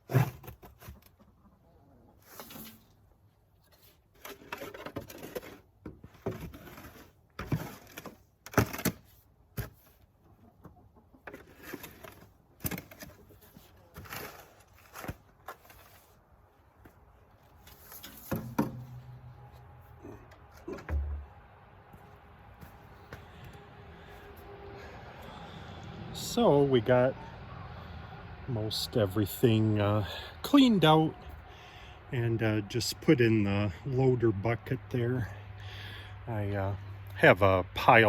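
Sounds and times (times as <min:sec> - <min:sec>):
shovel scraping chicken coop: 0:00.0 - 0:32.1
low hum: 0:16.4 - 0:38.0.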